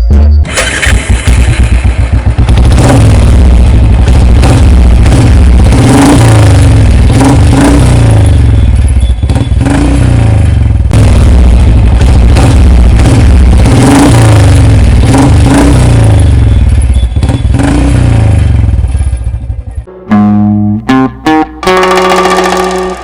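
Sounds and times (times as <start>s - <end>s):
electronic dance music: 19.9s - 23.0s.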